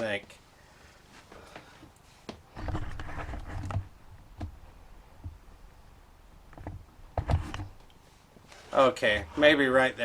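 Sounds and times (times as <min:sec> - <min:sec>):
knocking and rubbing on microphone: 0:02.2 - 0:05.6, 0:06.3 - 0:08.5.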